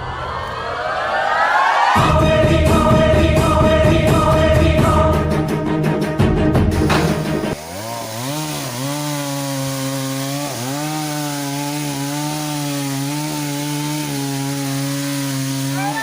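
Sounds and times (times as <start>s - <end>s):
chainsaw cutting a tree: 7.5s - 16.0s.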